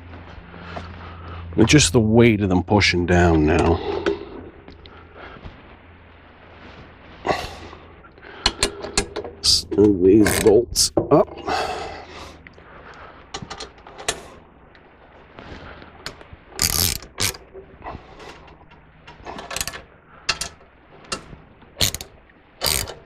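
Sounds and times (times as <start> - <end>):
ratchet wrench clicking: 16.6 - 17.4, 21.8 - 23.0.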